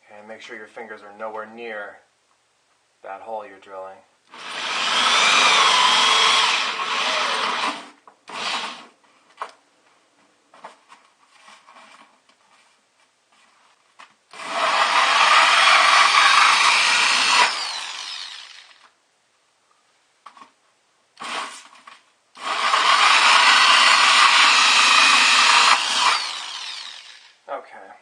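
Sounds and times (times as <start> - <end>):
power drill hole saw cutting plastic: 4.3 - 8.8, 14.3 - 18.9, 21.2 - 21.7, 22.4 - 27.4
small scrapes and knocks: 10.5 - 14.2.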